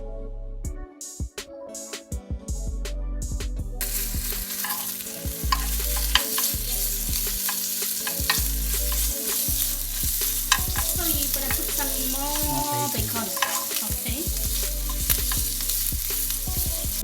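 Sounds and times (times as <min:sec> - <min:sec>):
faint background music: 0:00.0 - 0:17.0
food sizzling in a pan: 0:03.8 - 0:17.0.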